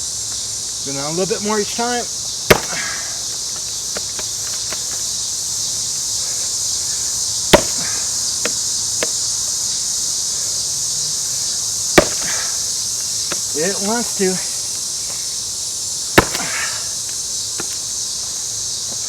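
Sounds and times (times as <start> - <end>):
insects chirring: 0.0 - 19.0
axe blows into wood: 2.5 - 3.2, 7.5 - 8.1, 12.0 - 12.6, 16.2 - 16.9.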